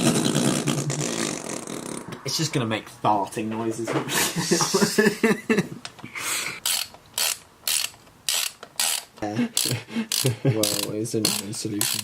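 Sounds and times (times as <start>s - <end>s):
socket ratchet wrench clicking: 6.6s - 12.0s.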